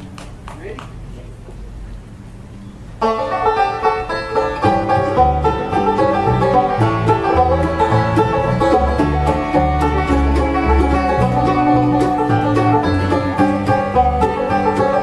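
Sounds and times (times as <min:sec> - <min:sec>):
upright double bass walking: 0:00.0 - 0:15.0
bluegrass band playing: 0:02.9 - 0:15.0
banjo: 0:03.0 - 0:15.0.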